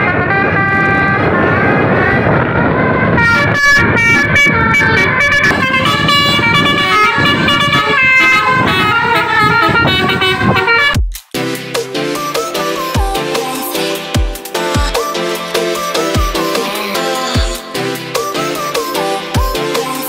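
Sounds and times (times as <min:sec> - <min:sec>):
bus horn playing a tune: 0:00.0 - 0:11.0
road noise: 0:00.0 - 0:20.0.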